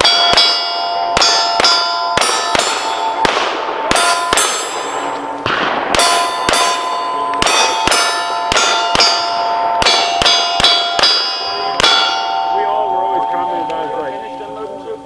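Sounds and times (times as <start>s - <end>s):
pistol shots: 0.0s - 12.6s.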